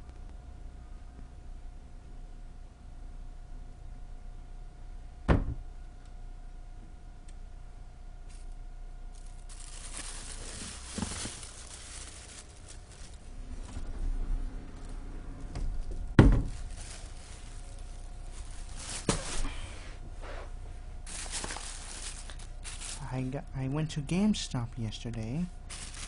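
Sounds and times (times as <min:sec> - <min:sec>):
rustling and crinkling: 0:08.3 - 0:23.4, 0:25.7 - 0:26.0.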